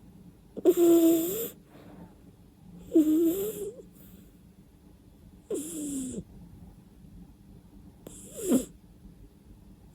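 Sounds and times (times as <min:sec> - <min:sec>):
cat snoring: 0:00.6 - 0:01.6, 0:02.8 - 0:03.9, 0:05.4 - 0:06.3, 0:08.0 - 0:08.8.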